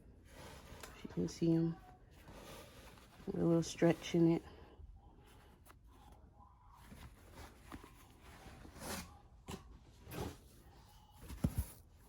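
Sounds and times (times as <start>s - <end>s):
rustling of clothing: 0.0s - 4.5s, 5.2s - 12.0s
box contents being handled: 10.0s - 12.0s.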